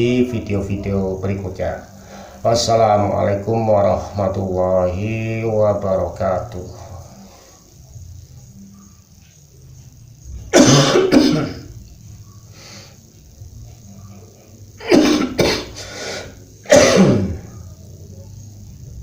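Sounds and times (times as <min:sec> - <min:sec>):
person coughing: 0:10.6 - 0:11.7, 0:14.8 - 0:15.8, 0:16.7 - 0:17.4.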